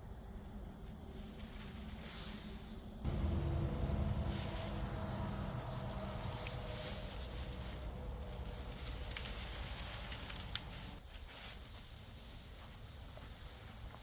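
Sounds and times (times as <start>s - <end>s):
branches dragged rustling: 1.3s - 11.8s.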